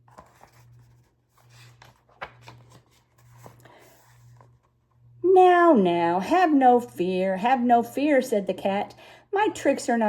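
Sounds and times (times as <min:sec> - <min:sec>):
paper rustling: 0:00.0 - 0:04.8
book pages clicking: 0:00.1 - 0:03.7.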